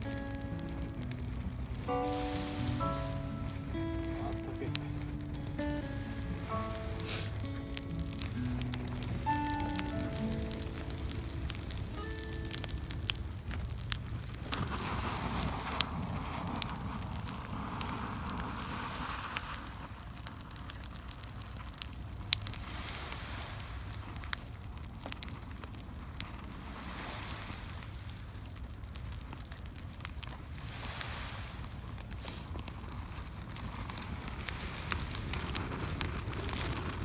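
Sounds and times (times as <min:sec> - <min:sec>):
low steady rumble: 0:00.0 - 0:22.6
campfire crackling: 0:00.0 - 0:37.0
fire pops: 0:00.0 - 0:37.0.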